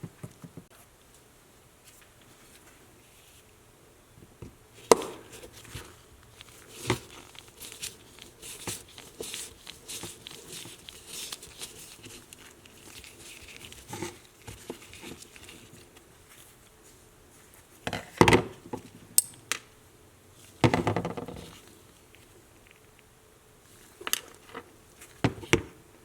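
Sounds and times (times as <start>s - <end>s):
crinkly rustling: 4.8s - 17.8s.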